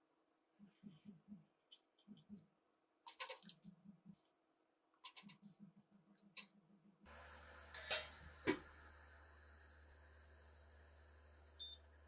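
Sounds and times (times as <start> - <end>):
steady hiss: 7.1 - 11.6.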